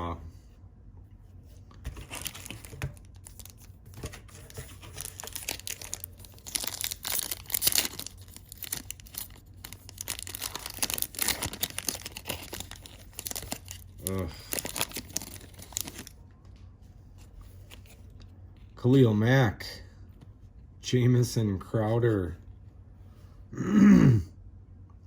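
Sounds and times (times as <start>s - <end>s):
wrapper ripping and crinkling: 1.9s - 16.2s.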